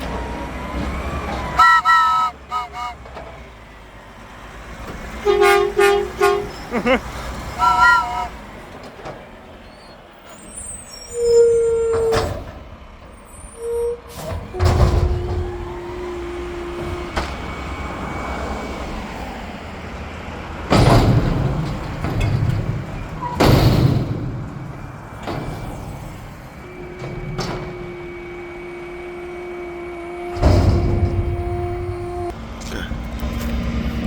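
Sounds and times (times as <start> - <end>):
garbage truck engine running: 0.0 - 34.0
air brakes hissing: 9.6 - 19.5, 25.4 - 32.3
short steady tones: 26.6 - 32.3.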